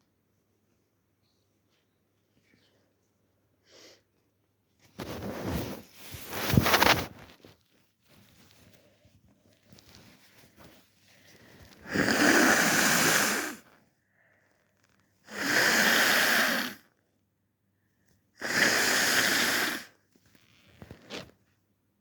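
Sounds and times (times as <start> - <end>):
tissue rustling: 4.8 - 11.7
person blowing nose: 11.8 - 13.7, 15.3 - 16.8, 18.4 - 20.0.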